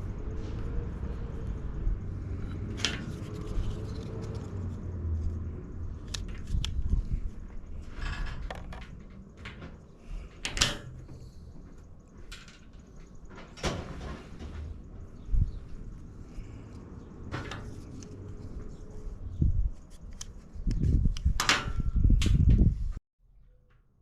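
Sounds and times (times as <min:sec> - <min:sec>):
low rumble: 0:00.0 - 0:10.3.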